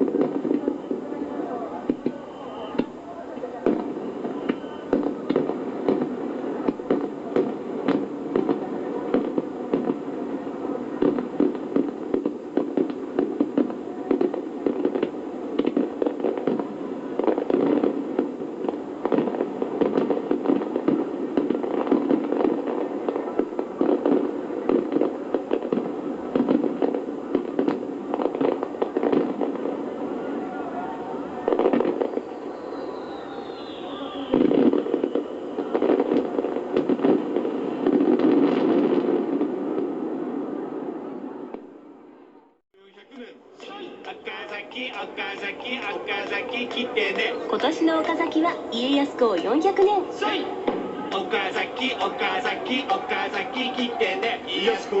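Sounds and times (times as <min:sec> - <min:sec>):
fireworks bursting: 0:00.0 - 0:55.0
rumble of fireworks reports: 0:00.0 - 0:55.0.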